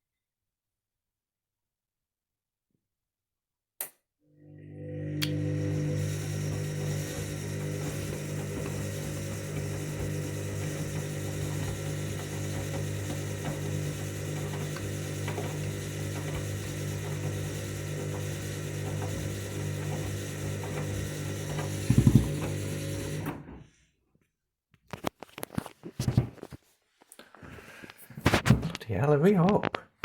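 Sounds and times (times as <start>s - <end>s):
washing machine motor humming: 4.4s - 23.6s
knocks and clicks: 21.9s - 22.6s.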